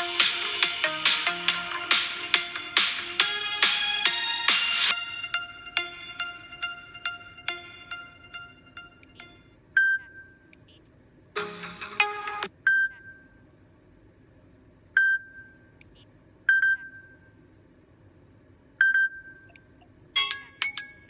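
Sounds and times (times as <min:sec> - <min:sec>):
phone ringtone chime: 0:05.0 - 0:09.5, 0:20.2 - 0:21.0
bright phone beeps: 0:07.0 - 0:10.4.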